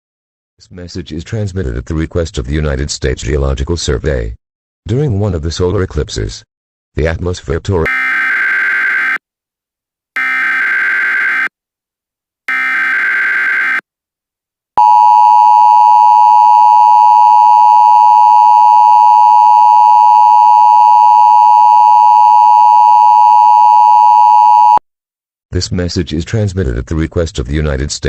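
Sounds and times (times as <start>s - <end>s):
steady attention tone: 14.8s - 24.8s.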